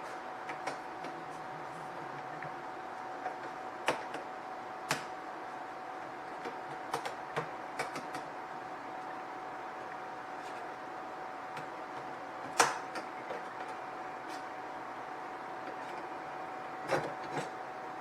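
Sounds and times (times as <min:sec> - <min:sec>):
steady high-pitched hum: 0:05.2 - 0:18.0.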